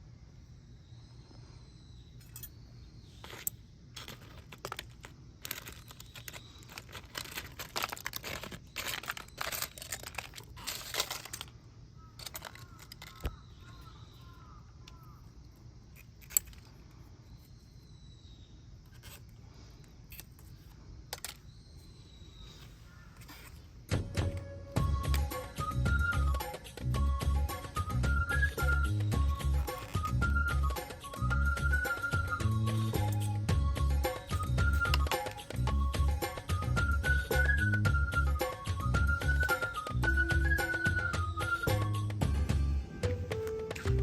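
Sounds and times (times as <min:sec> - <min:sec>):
hands rustling and crinkling objects: 0:03.1 - 0:15.0, 0:27.5 - 0:42.0.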